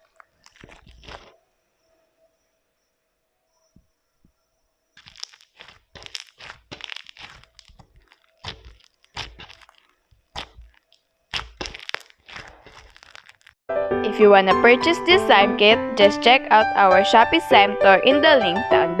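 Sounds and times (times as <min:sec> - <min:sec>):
crunchy slime crackling: 0:00.0 - 0:01.4, 0:04.9 - 0:13.6.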